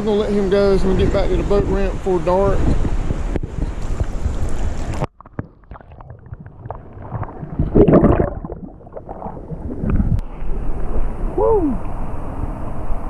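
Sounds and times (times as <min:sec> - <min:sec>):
wind buffeting microphone: 0:00.0 - 0:05.1, 0:06.0 - 0:13.0
water sloshing: 0:02.7 - 0:10.2.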